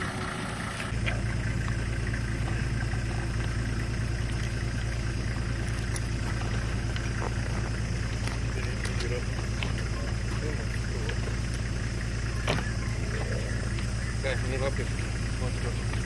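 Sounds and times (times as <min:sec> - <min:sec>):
truck engine idling: 0:00.0 - 0:16.0.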